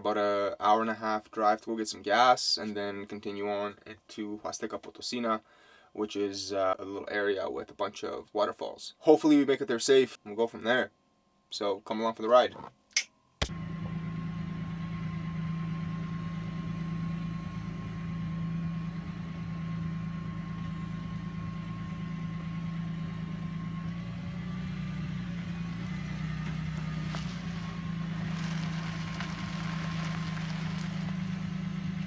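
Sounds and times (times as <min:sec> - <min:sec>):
van engine droning: 0:13.5 - 0:32.0
road and wind hiss: 0:24.8 - 0:32.0.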